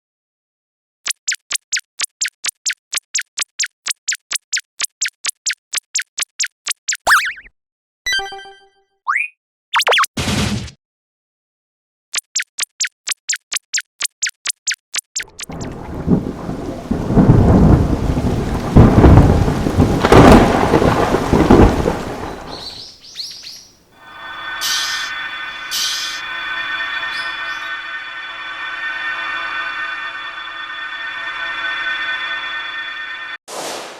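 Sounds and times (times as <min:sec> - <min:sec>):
cartoon falling chirps: 0:06.9 - 0:07.5
loud rumbling crackling noise: 0:15.5 - 0:22.7
short high chirps: 0:24.1 - 0:27.9.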